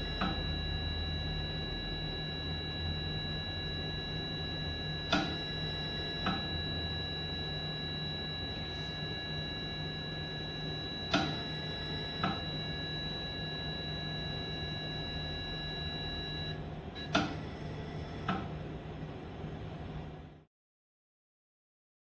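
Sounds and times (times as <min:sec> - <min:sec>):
high-pitched alarm tone: 0:00.0 - 0:16.6.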